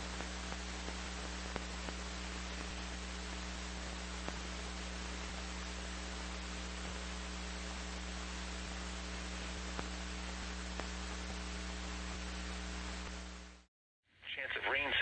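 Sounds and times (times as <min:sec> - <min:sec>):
low mains hum: 0:00.0 - 0:13.7
radio static hiss: 0:00.0 - 0:13.7, 0:14.3 - 0:15.0.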